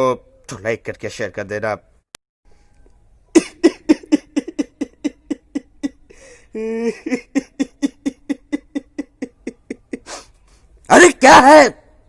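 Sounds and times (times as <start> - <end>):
man laughing: 3.3 - 10.2.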